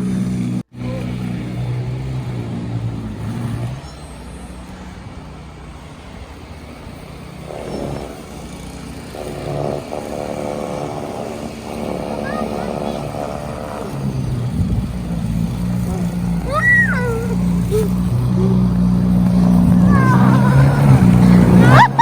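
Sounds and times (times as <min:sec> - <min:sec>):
engine running: 0:00.0 - 0:22.0.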